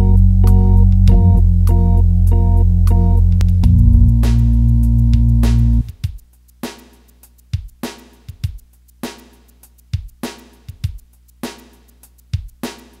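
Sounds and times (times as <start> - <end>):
sparse drum beat: 1.0 - 1.8, 3.4 - 6.2.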